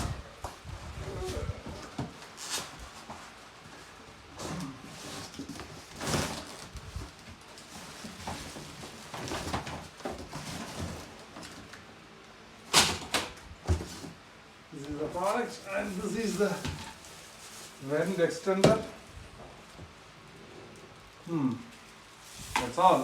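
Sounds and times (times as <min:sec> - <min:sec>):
packaging rustling and scraping: 0:00.0 - 0:11.8, 0:15.2 - 0:18.9, 0:21.8 - 0:23.0.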